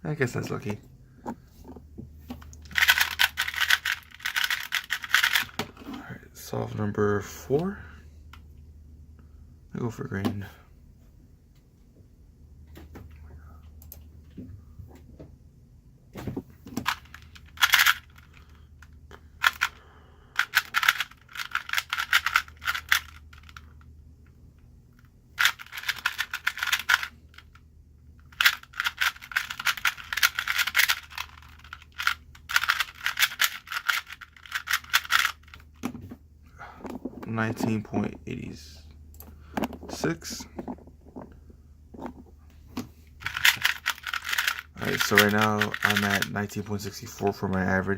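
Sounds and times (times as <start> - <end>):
faint low hum: 0.0 - 47.9
speed cube clicking: 2.7 - 5.6, 16.8 - 18.0, 20.4 - 23.6, 25.4 - 27.1, 28.3 - 35.6, 43.3 - 46.3.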